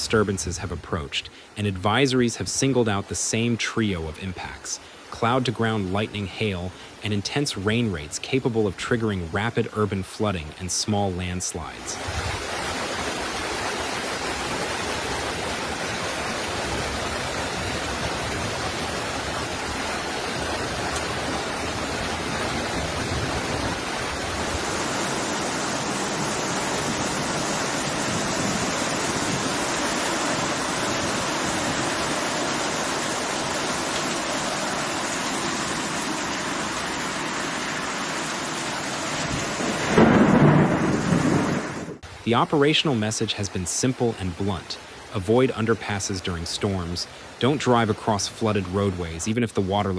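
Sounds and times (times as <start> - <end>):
floodwater rushing: 0.0 - 49.9.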